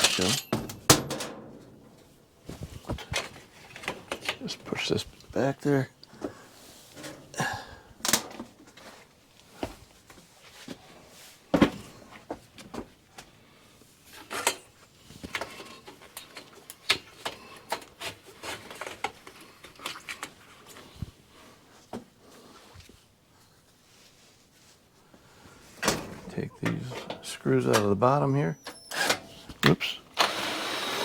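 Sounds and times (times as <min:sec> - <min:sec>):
sheet metal clanking and scraping: 0:25.8 - 0:27.9.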